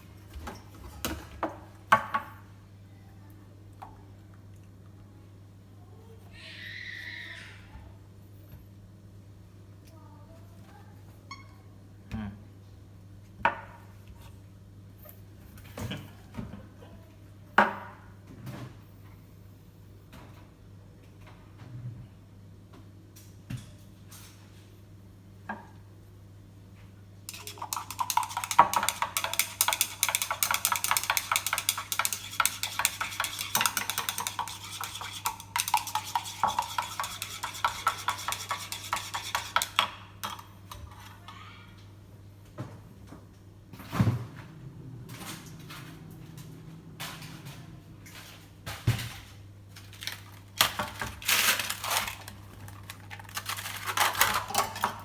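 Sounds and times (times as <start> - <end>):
dishes and cups clattering: 27.3 - 41.2, 50.0 - 55.0.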